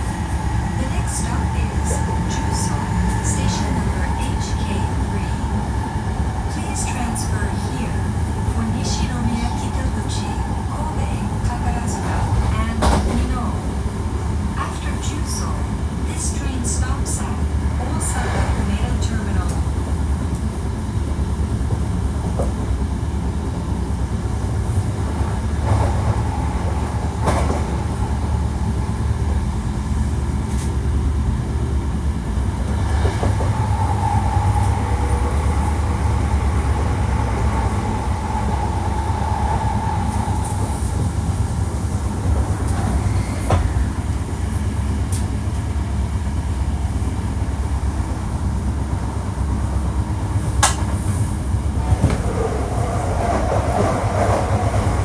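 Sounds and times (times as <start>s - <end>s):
train wheels rumbling on rail: 0.0s - 55.0s
rail-joint clicks: 6.6s - 13.6s, 24.7s - 28.4s, 50.3s - 55.0s.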